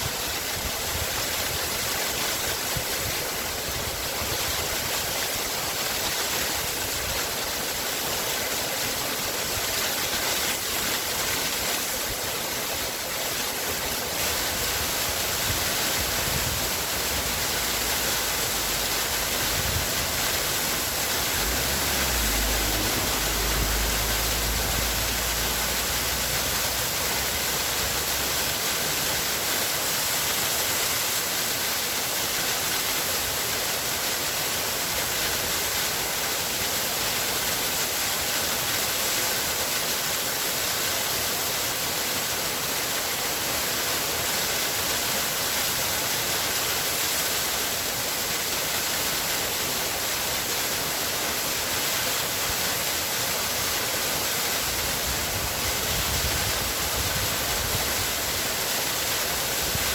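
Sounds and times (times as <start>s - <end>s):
waterfall rushing: 1.6s - 59.9s
low rumble: 16.0s - 28.2s.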